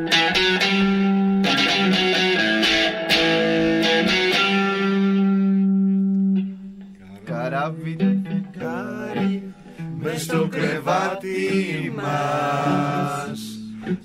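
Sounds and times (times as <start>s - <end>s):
guitar chords strummed: 0.0s - 14.0s.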